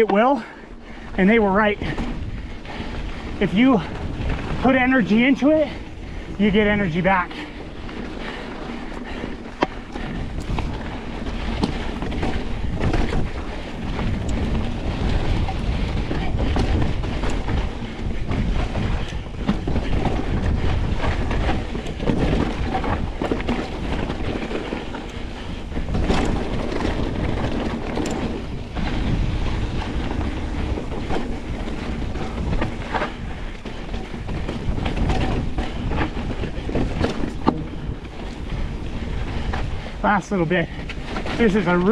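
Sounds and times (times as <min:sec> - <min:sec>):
bike tyres rumbling over ground: 0:00.0 - 0:41.9
wind on microphone: 0:00.0 - 0:41.9
bike knocking over bumps: 0:07.5 - 0:39.6.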